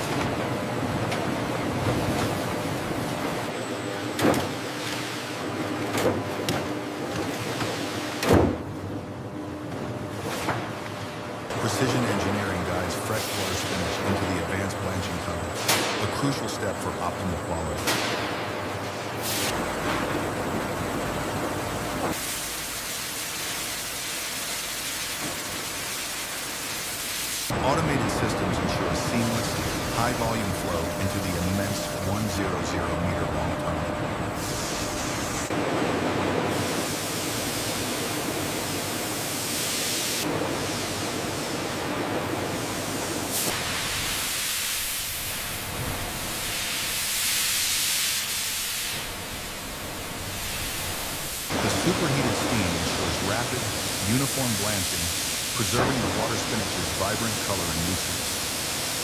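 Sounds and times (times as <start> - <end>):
machinery rushing hiss: 22.1 - 33.5, 34.3 - 35.5, 42.5 - 59.0.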